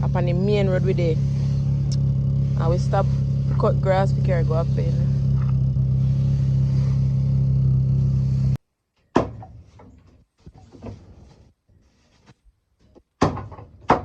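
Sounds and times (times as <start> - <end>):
vehicle engine droning: 0.0 - 8.6
knocks and thuds: 9.1 - 10.0, 13.2 - 14.0.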